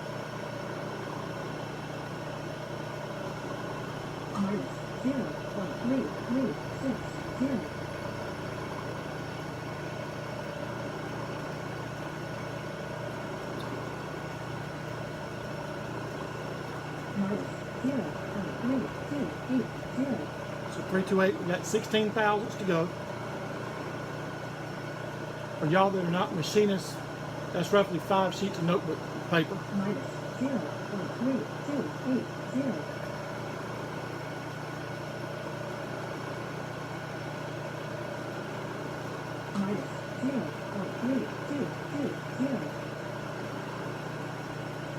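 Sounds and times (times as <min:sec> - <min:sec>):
milling machine hum: 0:00.0 - 0:44.9.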